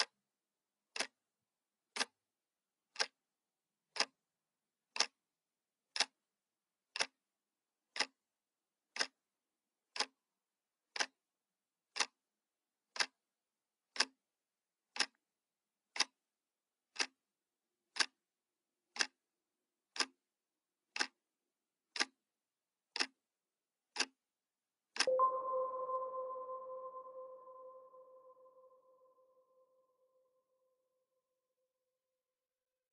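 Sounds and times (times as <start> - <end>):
clock ticking: 0.9 - 1.2, 1.9 - 2.2, 2.9 - 3.2, 3.9 - 4.2, 4.9 - 5.2, 5.9 - 6.3, 6.9 - 7.2, 7.9 - 8.3, 8.9 - 9.3, 9.9 - 10.2, 10.9 - 11.2, 11.9 - 12.3, 12.9 - 13.3, 13.9 - 14.3, 14.9 - 15.2, 15.9 - 16.3, 16.9 - 17.2, 17.9 - 18.3, 18.9 - 19.3, 19.9 - 24.2, 25.0 - 29.1.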